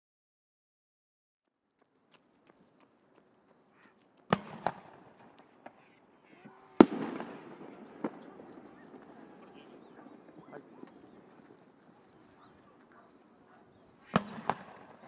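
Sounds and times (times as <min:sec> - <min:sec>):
fireworks bursting with rumbling echo: 0:04.3 - 0:15.0.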